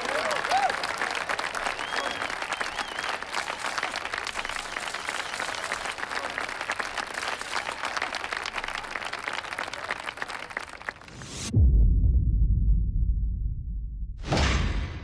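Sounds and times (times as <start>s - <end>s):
crowd applauding: 0.0s - 11.2s.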